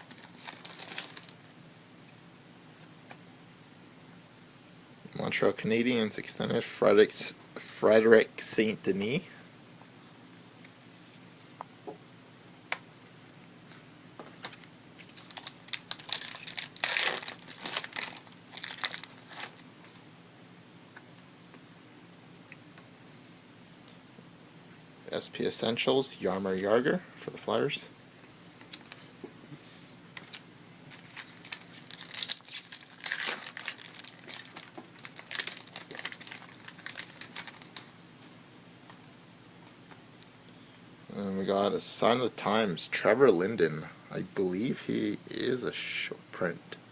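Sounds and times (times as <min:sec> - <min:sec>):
card packaging crinkling: 0:00.0 - 0:01.5, 0:14.4 - 0:20.0, 0:30.2 - 0:39.1.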